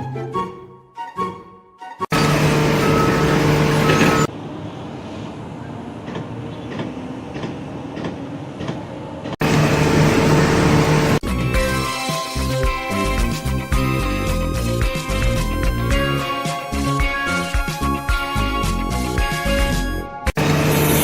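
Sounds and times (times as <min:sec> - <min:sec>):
music: 0:00.0 - 0:02.2, 0:11.2 - 0:21.0
machinery humming: 0:02.1 - 0:04.9, 0:09.4 - 0:11.2, 0:20.4 - 0:21.0.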